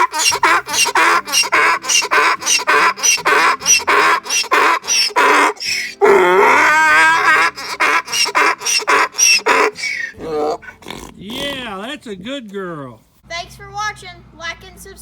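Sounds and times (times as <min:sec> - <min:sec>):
donkey braying: 0:00.0 - 0:12.4.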